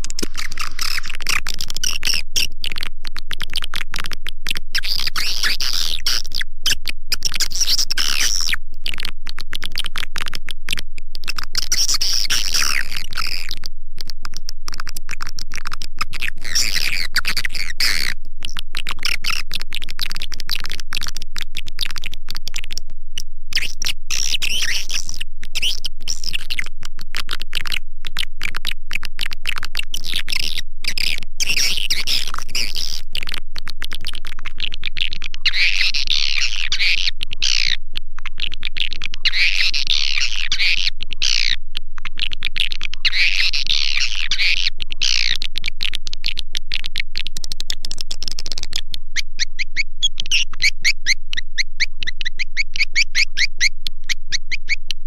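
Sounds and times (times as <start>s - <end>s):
swiftlets twittering: 0.0s - 2.2s
faint low hum: 0.0s - 55.0s.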